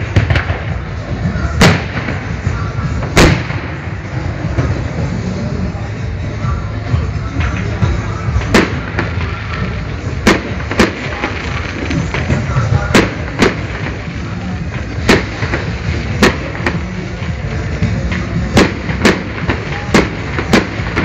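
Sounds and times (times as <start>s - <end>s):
fireworks bangs: 0.0s - 21.0s.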